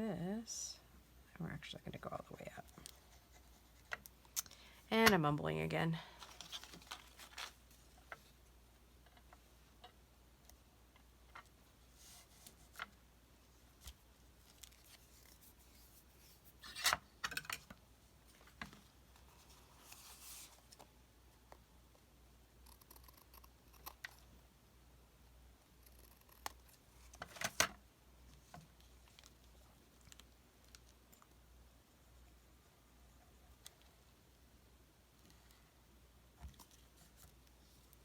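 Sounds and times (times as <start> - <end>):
paper rustling: 6.1 - 8.2.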